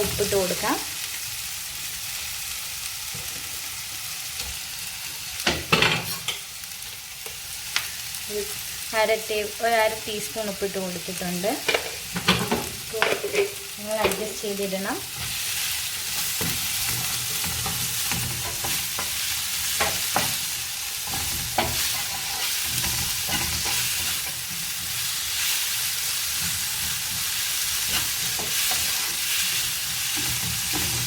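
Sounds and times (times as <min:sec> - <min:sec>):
onion and tomato sizzling in pan: 0:00.0 - 0:31.0
spatula scraping pan: 0:15.2 - 0:31.0.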